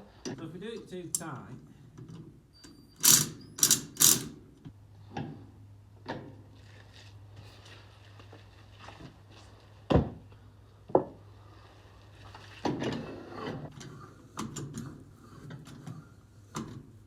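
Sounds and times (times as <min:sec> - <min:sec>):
metal parts rattling and scraping: 0:03.0 - 0:04.4
sharp metal clacks: 0:03.0 - 0:04.4.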